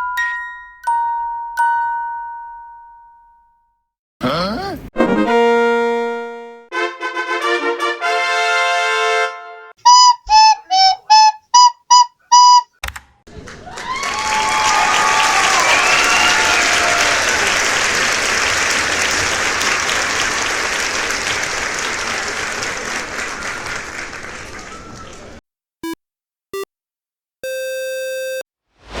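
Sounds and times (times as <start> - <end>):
whistles: 9.8 - 12.8, 14.0 - 16.9, 22.9 - 25.4
short electronic beeps: 10.0 - 12.8, 27.4 - 28.4
crowd applauding and cheering: 13.3 - 25.4.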